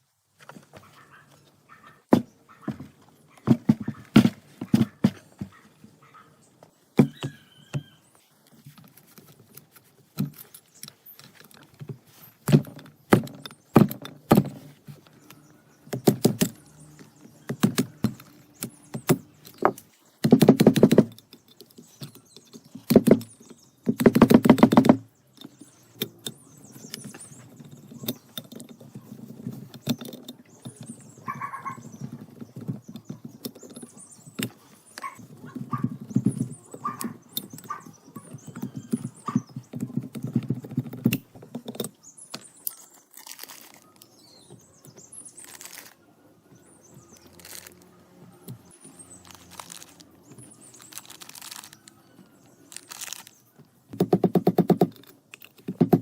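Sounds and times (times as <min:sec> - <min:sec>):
tools knocking and clicking: 0:08.7 - 0:42.8, 0:53.9 - 0:56.0.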